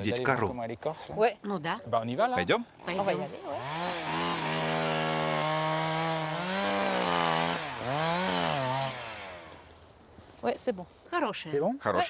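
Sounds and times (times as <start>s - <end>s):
chainsaw revving: 3.0s - 9.7s.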